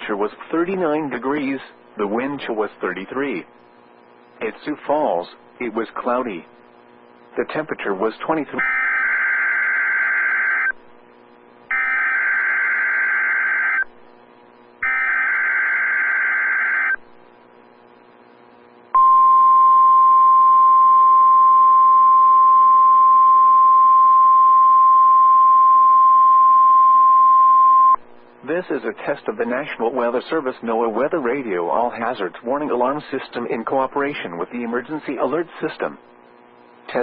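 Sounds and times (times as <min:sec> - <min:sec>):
steady high alarm tone: 0:08.6 - 0:10.8, 0:11.7 - 0:13.9, 0:14.8 - 0:17.0
screeching digital header bursts: 0:11.7 - 0:13.8.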